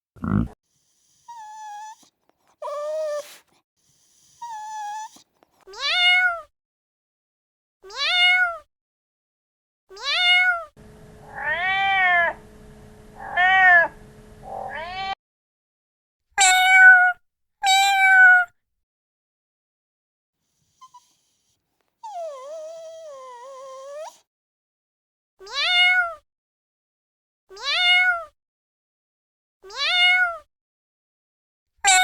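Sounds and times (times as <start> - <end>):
cat meowing: 5.7 - 6.5, 7.9 - 8.7, 9.9 - 10.7, 11.3 - 12.5, 13.2 - 15.2, 16.4 - 18.5, 25.5 - 26.2, 27.6 - 28.3, 29.7 - 30.4
steady low hum: 10.8 - 15.0.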